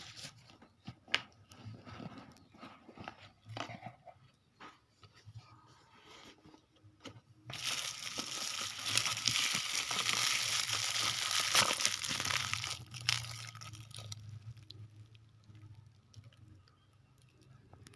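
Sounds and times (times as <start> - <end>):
packaging crinkling: 7.5 - 16.4.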